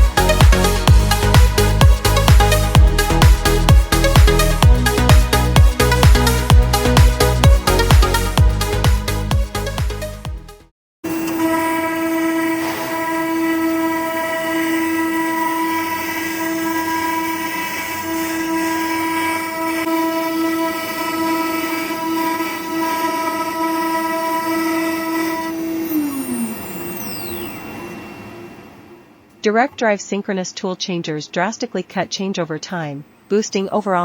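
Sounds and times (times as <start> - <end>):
router spindle high-pitched whine: 11.1 - 29.4.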